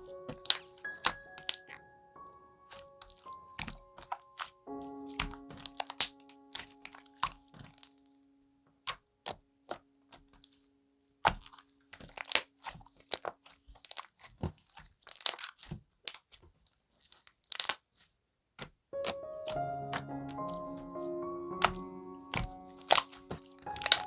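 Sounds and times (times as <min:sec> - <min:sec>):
soft background music: 0:00.0 - 0:10.3, 0:19.0 - 0:24.0
slime clicking and popping: 0:11.2 - 0:13.2, 0:15.1 - 0:16.3, 0:17.5 - 0:17.8, 0:18.6 - 0:20.6, 0:21.6 - 0:24.0.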